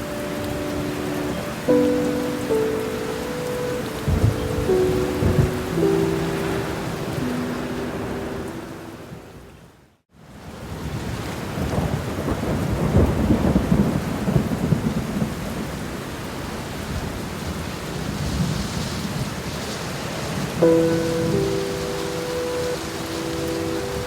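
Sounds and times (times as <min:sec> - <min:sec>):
rain falling: 0:00.0 - 0:24.0
rolling thunder: 0:03.9 - 0:07.4, 0:11.5 - 0:15.8.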